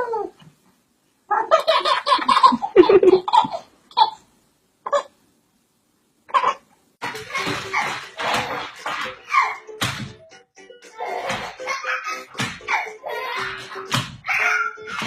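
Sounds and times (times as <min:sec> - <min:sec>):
laughter in short bursts: 0:02.5 - 0:03.2.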